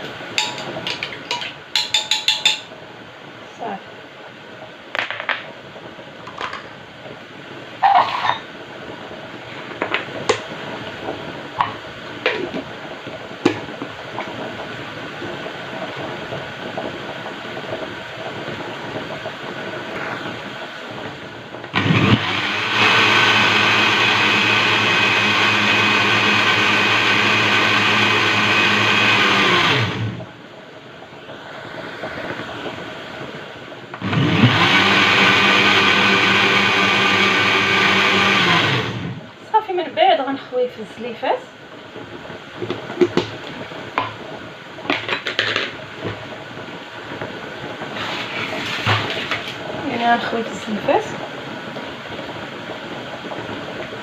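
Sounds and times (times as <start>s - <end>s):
clinks and knocks: 0.4s - 2.7s
electric blender running: 21.7s - 30.3s, 33.9s - 39.3s.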